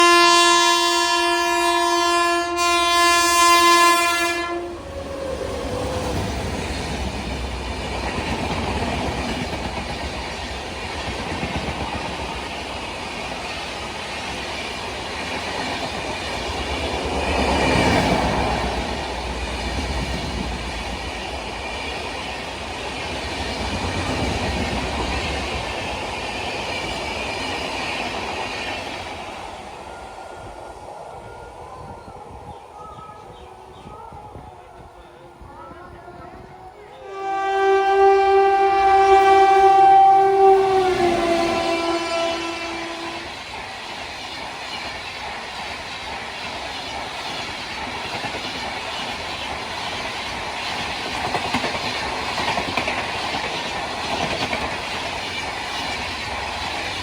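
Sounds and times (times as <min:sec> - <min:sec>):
locomotive horn blasting: 0:00.0 - 0:05.0, 0:36.0 - 0:43.3
train wheels rumbling over rails: 0:00.9 - 0:35.0, 0:36.0 - 0:57.0.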